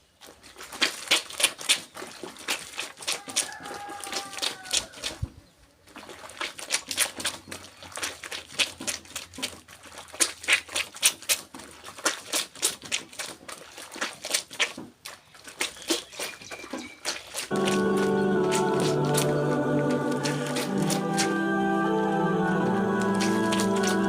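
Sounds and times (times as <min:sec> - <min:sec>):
clothes splashing in water: 0:00.2 - 0:05.3, 0:05.9 - 0:21.4, 0:22.6 - 0:24.0
music: 0:17.5 - 0:24.0.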